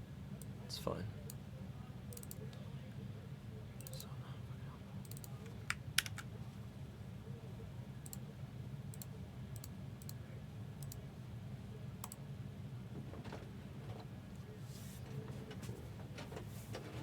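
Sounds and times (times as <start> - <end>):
computer mouse clicks: 2.1 - 2.4, 3.8 - 4.1, 5.0 - 6.3, 8.0 - 8.2, 8.9 - 10.2, 10.8 - 11.0, 12.0 - 12.2.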